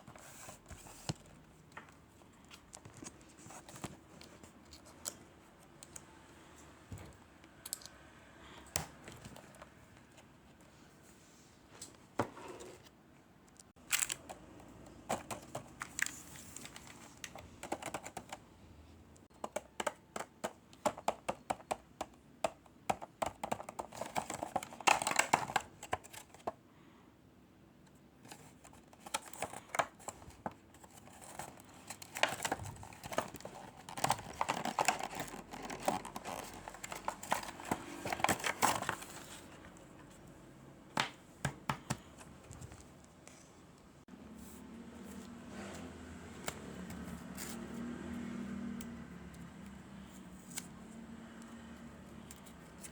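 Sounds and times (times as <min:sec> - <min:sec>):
packaging crinkling and tearing: 0:13.8 - 0:14.3, 0:31.0 - 0:39.2.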